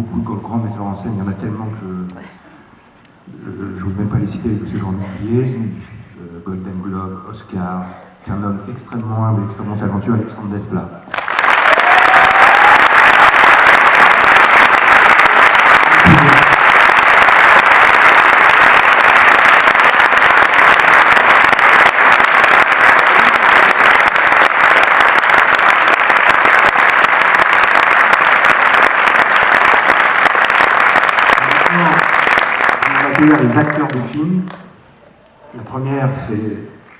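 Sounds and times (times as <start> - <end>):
audience applauding: 11.1 - 34.7.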